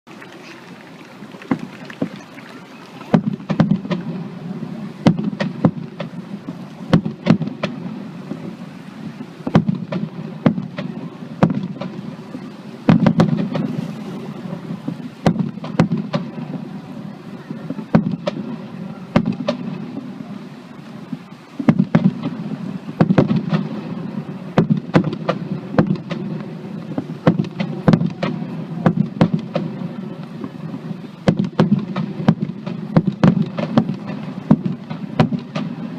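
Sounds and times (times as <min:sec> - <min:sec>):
fireworks crackling: 0:00.1 - 0:35.9
firework shell bursts: 0:09.3 - 0:16.6.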